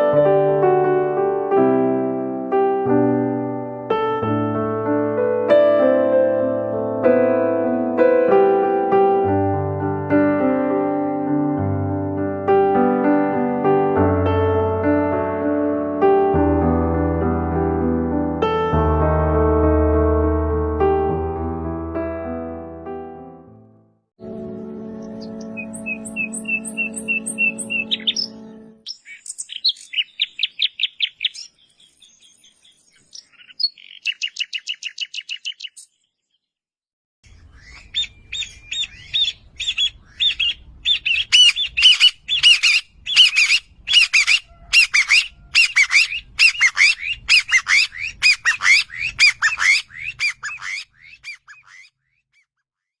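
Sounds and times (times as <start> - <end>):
bird chirps: 24.9 - 36.6, 37.2 - 53.0
harsh bird squawking: 25.6 - 31.4, 37.3 - 52.5.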